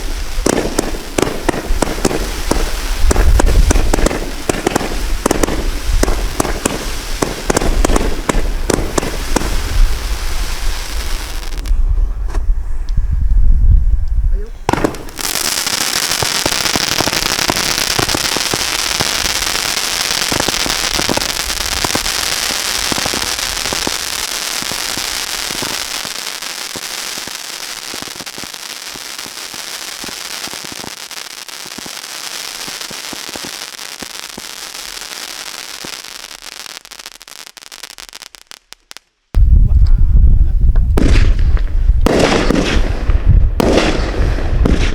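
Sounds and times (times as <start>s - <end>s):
fireworks crackling: 0.0s - 11.8s, 14.6s - 39.6s, 40.4s - 44.9s.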